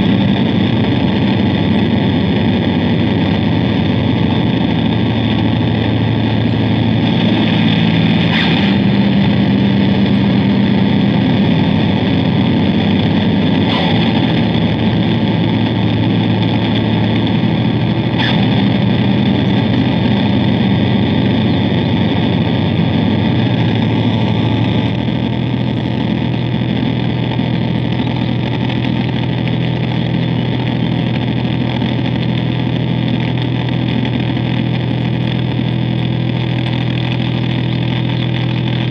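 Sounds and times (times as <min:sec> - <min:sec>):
distorted bass guitar drone: 0:00.0 - 0:38.9.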